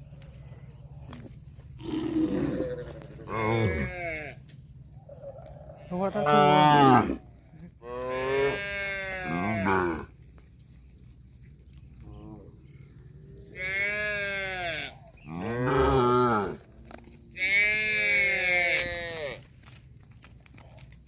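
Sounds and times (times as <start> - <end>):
cattle mooing: 1.8 - 4.4, 6.0 - 10.1, 13.5 - 19.4.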